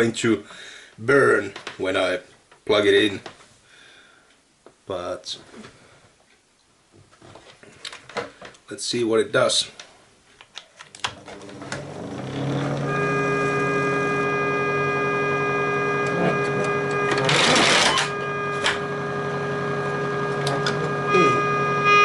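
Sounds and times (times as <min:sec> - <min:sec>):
organ blower fan humming: 0:11.0 - 0:22.0
held organ note: 0:12.3 - 0:22.0.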